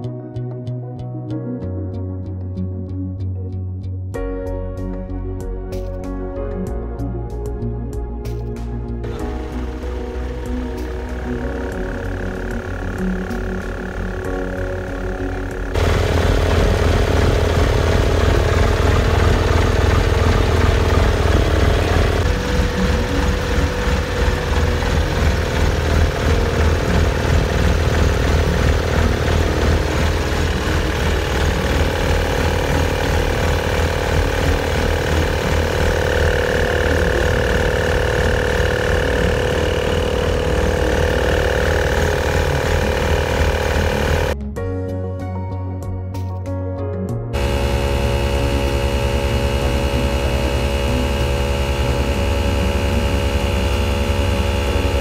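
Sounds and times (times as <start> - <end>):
machine deep hum: 9.0 - 44.4, 47.4 - 55.0
steady mid-pitched tone: 9.1 - 44.4, 47.4 - 55.0.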